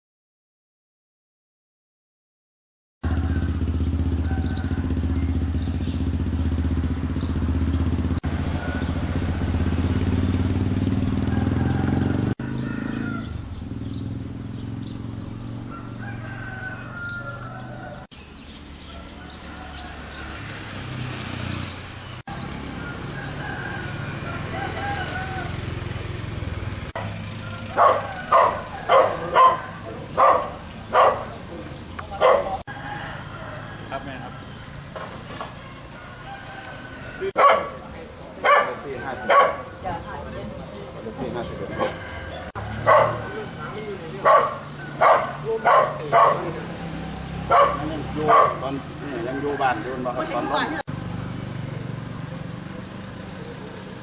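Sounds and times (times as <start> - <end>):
roosters crowing: 3.0 - 6.9, 7.6 - 13.9, 14.6 - 54.0
dog barking: 27.0 - 31.4, 32.2 - 32.6, 37.4 - 37.8, 38.4 - 39.7, 41.8 - 42.1, 42.8 - 46.6, 47.4 - 48.8.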